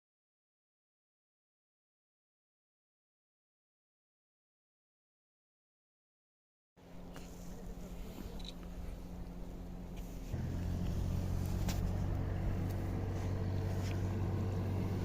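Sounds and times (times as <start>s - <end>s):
engine humming: 6.8s - 15.0s.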